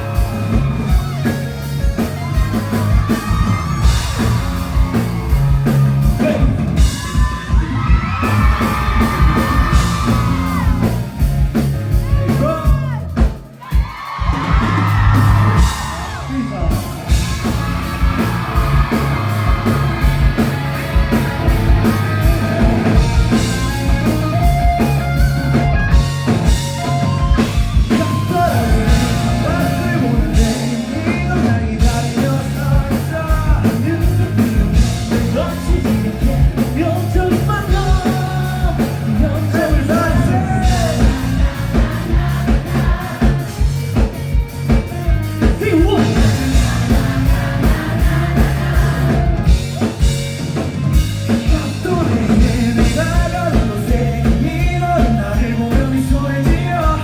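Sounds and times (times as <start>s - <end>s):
electric guitars: 0.0s - 13.1s, 14.2s - 57.0s
electric bass: 0.0s - 13.6s, 14.2s - 57.0s
drum kit: 0.0s - 57.0s
live rock band playing: 0.0s - 57.0s
person singing: 26.8s - 44.1s, 51.3s - 57.0s.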